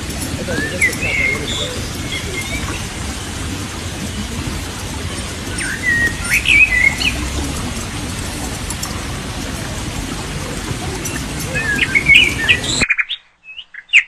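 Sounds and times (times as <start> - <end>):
outdoor background hiss: 0.0 - 14.0
songbird chirps and whistles: 11.0 - 14.0.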